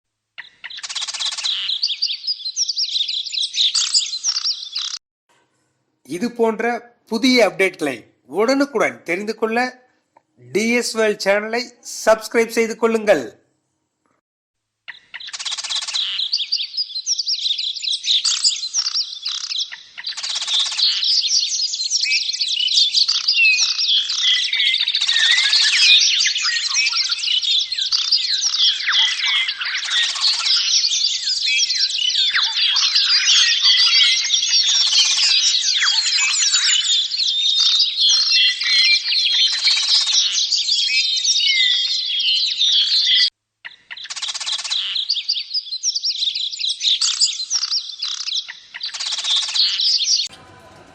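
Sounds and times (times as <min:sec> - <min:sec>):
flock of birds chattering and chirping: 0:00.4 - 0:05.0, 0:14.9 - 0:50.3
harsh bird calls: 0:00.4 - 0:05.0, 0:14.9 - 0:50.3.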